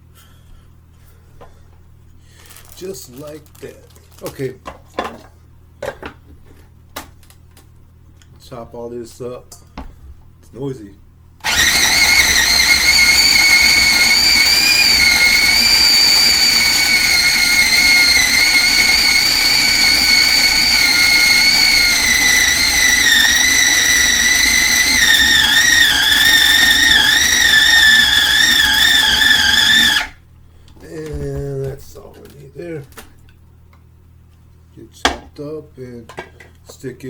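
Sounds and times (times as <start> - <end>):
electric food chopper motor whine: 11.4 - 30.2.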